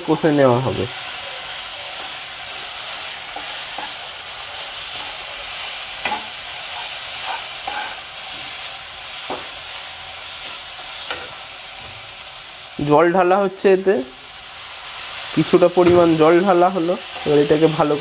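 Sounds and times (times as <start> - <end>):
spice paste sizzling in hot oil: 0.0 - 18.0
spatula scraping and knocking pan: 3.2 - 5.4, 6.0 - 8.5.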